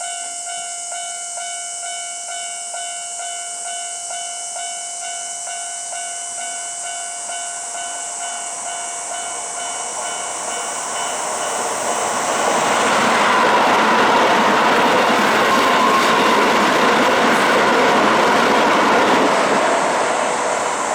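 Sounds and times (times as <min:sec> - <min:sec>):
level crossing warning bell: 0:00.0 - 0:20.9
train running noise: 0:06.8 - 0:20.9.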